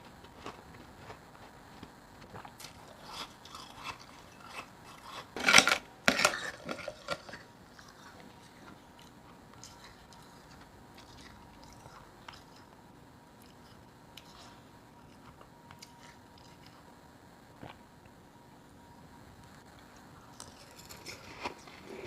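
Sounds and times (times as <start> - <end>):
ice being chewed: 0.0 - 12.8, 13.4 - 16.9, 19.8 - 22.0.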